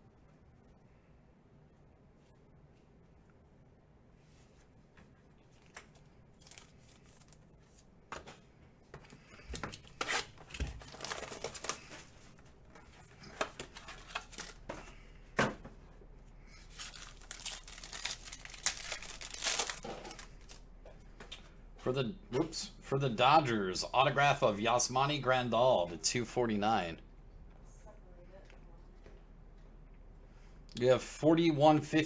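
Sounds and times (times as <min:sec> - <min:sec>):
cards rustling and clicking: 0:05.6 - 0:15.1, 0:16.6 - 0:21.4
card wrappers tearing: 0:05.8 - 0:07.4, 0:09.7 - 0:12.3, 0:13.2 - 0:14.8, 0:16.6 - 0:20.6.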